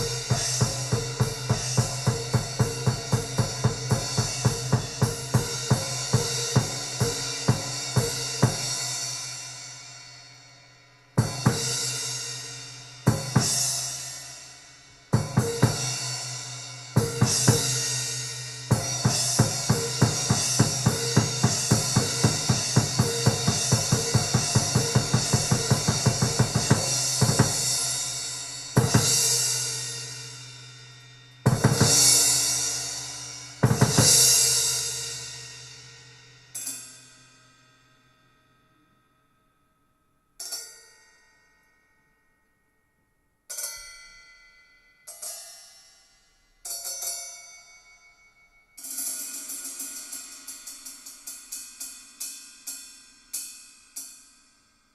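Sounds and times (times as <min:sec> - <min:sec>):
bass drum: 0:00.0 - 0:08.7, 0:15.2 - 0:16.2, 0:16.9 - 0:35.2
cymbal crashes: 0:00.0 - 0:37.8
fast run of drum hits: 0:18.7 - 0:27.8, 0:28.7 - 0:29.4, 0:31.5 - 0:32.4, 0:33.6 - 0:34.5.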